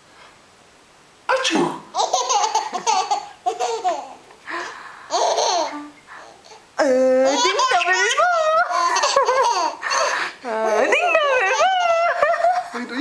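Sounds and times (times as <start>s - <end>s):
person sneezing: 1.3s - 1.9s
baby giggling: 1.9s - 4.3s, 5.1s - 6.6s, 7.2s - 12.8s.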